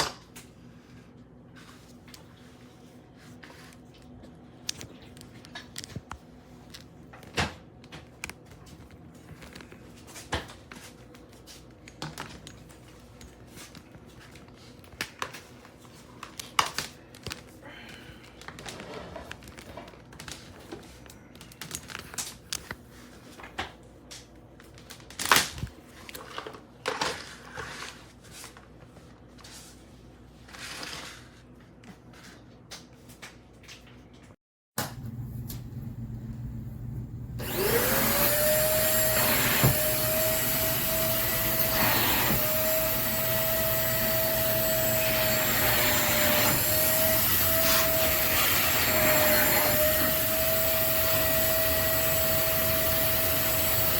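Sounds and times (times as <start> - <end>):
objects rustling and crinkling: 0.3 - 34.4.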